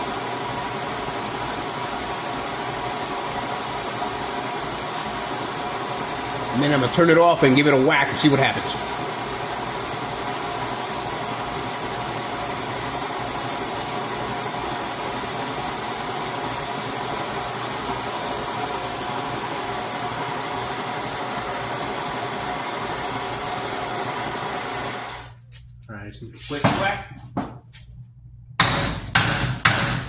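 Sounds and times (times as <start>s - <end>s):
propane torch flame hissing: 0.0s - 25.4s.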